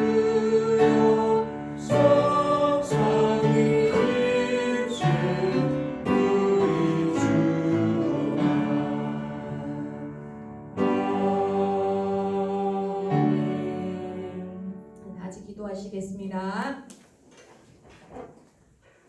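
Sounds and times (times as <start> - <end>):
congregation singing a hymn: 0.0 - 15.0.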